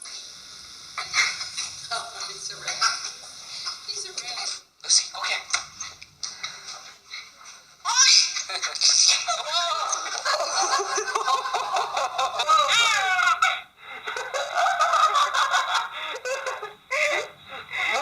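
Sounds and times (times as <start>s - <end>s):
people laughing: 9.3s - 18.0s.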